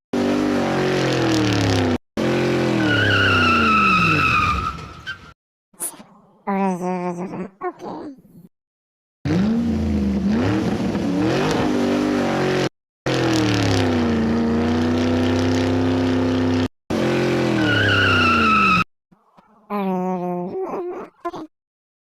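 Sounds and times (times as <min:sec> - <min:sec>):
car engine revving: 0:00.2 - 0:04.5, 0:09.3 - 0:18.8
tyre squeal: 0:02.8 - 0:05.4, 0:17.6 - 0:18.8.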